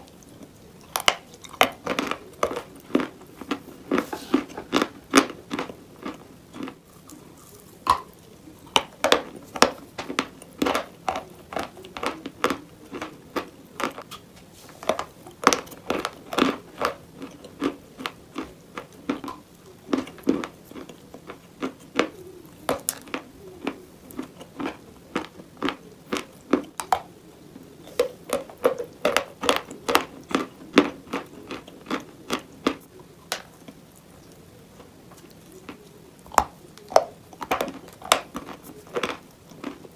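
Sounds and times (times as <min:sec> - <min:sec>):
chalk crunching and cracking: 0:00.1 - 0:27.0.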